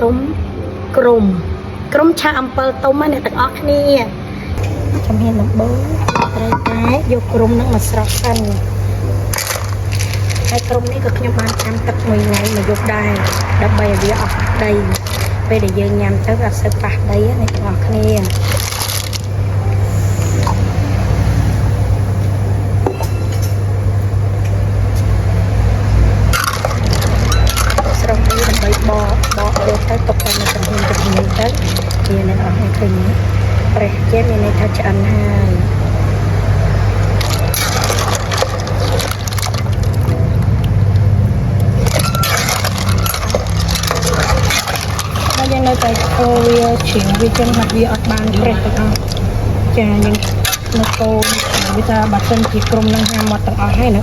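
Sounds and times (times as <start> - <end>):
steady low hum: 0.0 - 54.0
cooking burner rumble and hiss: 3.8 - 54.0
clam shells clattering in pot: 6.0 - 8.7, 9.3 - 19.4, 26.2 - 32.7, 36.8 - 40.5, 41.6 - 54.0.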